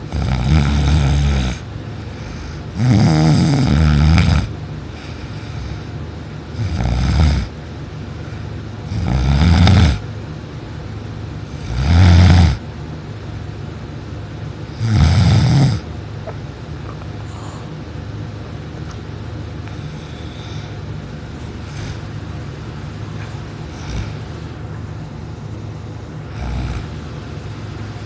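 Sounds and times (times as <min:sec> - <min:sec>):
steady low hum: 0:00.0 - 0:28.0
person snoring loudly: 0:00.1 - 0:01.6, 0:02.7 - 0:04.5, 0:06.5 - 0:07.5, 0:08.9 - 0:10.0, 0:11.5 - 0:12.6, 0:14.8 - 0:15.8, 0:23.7 - 0:24.2, 0:26.3 - 0:27.0.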